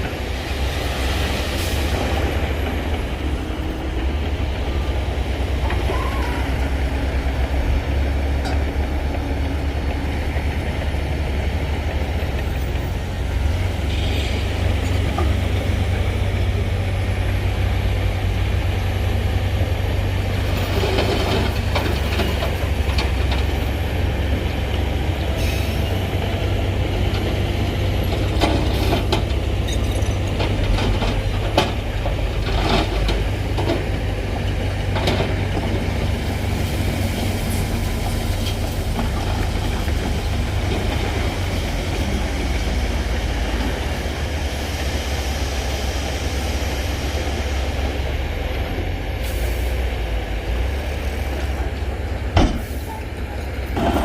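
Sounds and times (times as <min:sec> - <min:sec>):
heavy diesel machinery rumbling: 0:00.0 - 0:54.0
metallic clanks and squeaks: 0:29.6 - 0:30.7.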